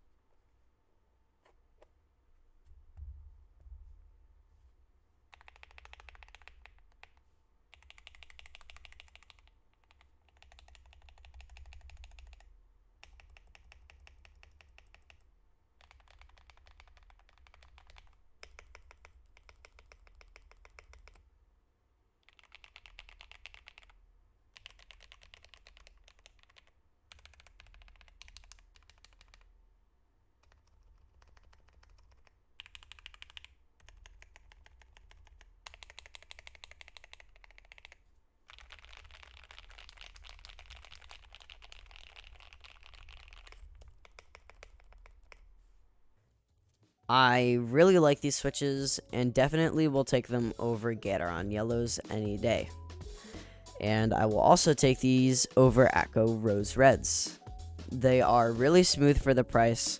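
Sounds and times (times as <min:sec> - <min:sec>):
mechanical keyboard typing: 0:05.3 - 0:21.2, 0:22.2 - 0:24.0, 0:24.6 - 0:29.5, 0:30.4 - 0:45.5.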